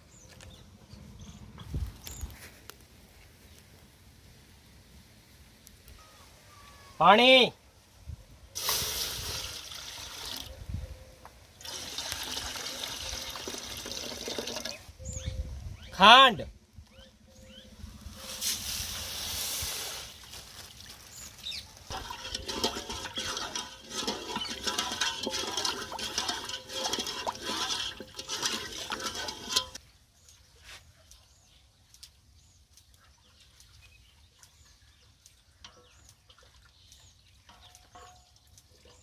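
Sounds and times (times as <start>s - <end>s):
water sloshing and splashing: 20.2s - 29.8s, 36.1s - 39.0s.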